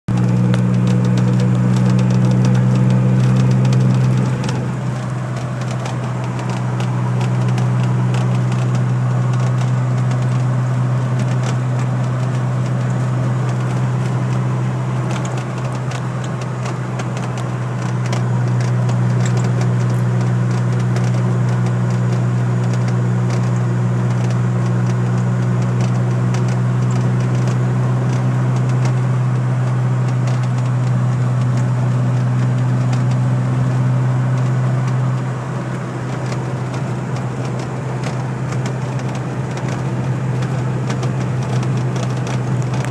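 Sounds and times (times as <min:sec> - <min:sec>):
car giving off low drone: 0:00.1 - 0:42.9.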